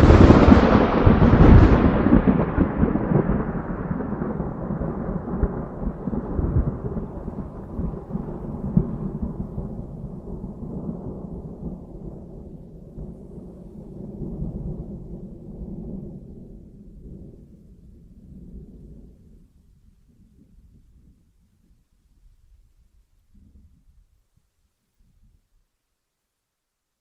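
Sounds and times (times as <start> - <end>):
thunder cracks: 0.0 - 19.4
thunder rumbling: 0.0 - 22.7.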